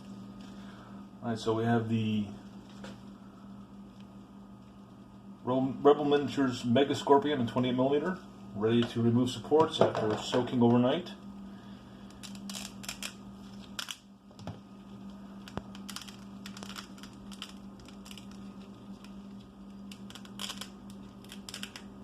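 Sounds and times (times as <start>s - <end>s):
steady low hum: 0.0s - 22.0s
small hard objects clicking: 15.5s - 21.9s.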